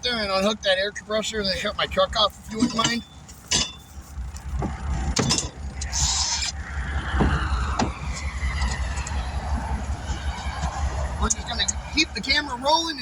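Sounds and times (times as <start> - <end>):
truck engine running: 0.0 - 13.0.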